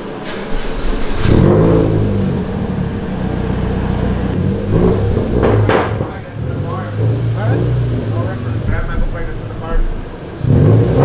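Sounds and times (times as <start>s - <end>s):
car engine revving: 0.0s - 11.0s
sharp knock: 5.4s - 6.1s.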